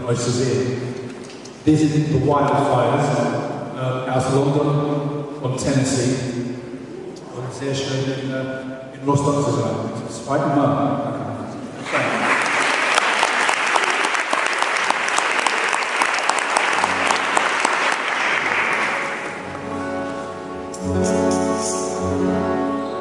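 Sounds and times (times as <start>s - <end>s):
audience clapping: 11.8s - 19.8s
instrument playing held notes: 16.8s - 23.0s.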